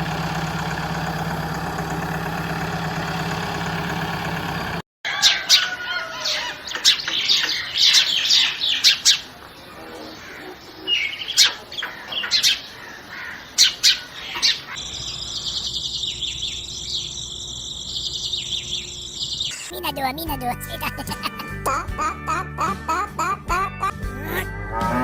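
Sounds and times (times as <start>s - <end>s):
birds chirping: 5.1s - 19.7s.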